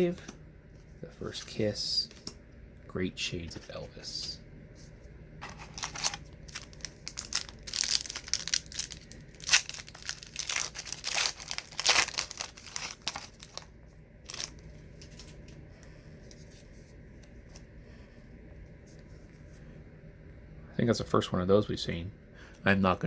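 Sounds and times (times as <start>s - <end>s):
wrapper tearing and crinkling: 5.4s - 15.3s.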